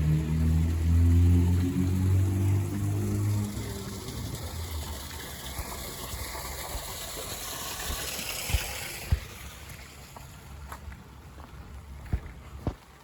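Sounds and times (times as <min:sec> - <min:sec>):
car tyres hissing on wet road: 0:00.0 - 0:10.2.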